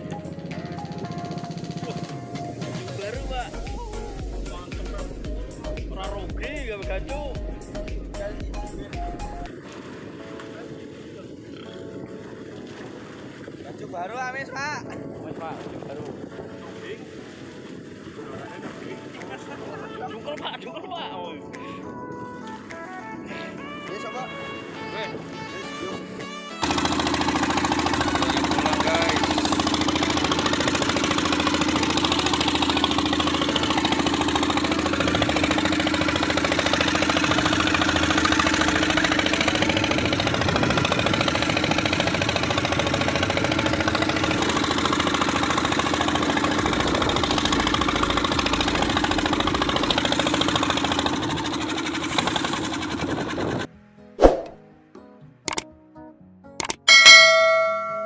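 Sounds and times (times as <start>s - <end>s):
boat engine running: 0.0s - 54.6s, 56.6s - 58.0s.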